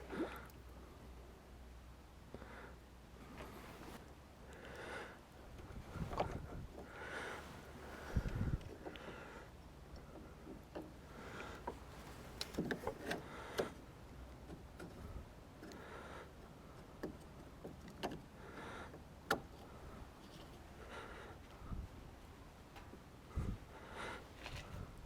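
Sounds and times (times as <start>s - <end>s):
light clicks and knocks: 9.9s - 13.8s, 16.8s - 18.3s.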